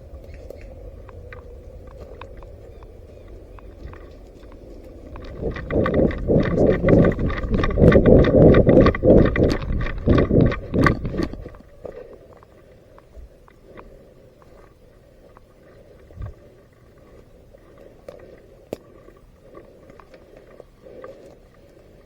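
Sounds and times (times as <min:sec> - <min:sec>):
running footsteps: 0:00.0 - 0:12.0.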